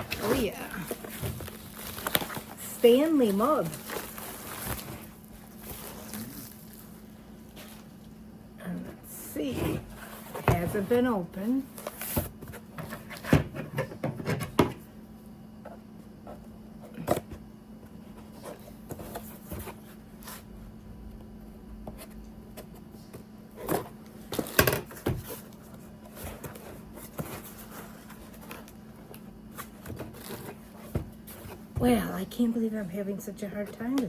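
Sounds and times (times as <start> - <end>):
packaging knocks and rustles: 0.0 - 8.0, 23.6 - 31.9
faint hum: 0.0 - 34.0.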